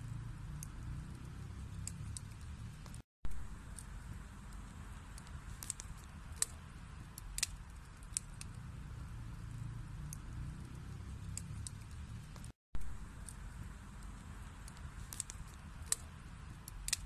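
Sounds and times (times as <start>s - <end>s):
flames rumbling: 0.1s - 17.0s
burning wood popping and crackling: 0.4s - 17.0s.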